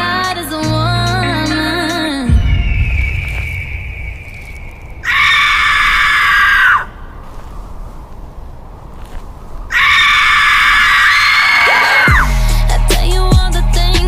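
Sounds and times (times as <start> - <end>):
high-pitched scream: 2.3 - 7.0, 9.7 - 12.3.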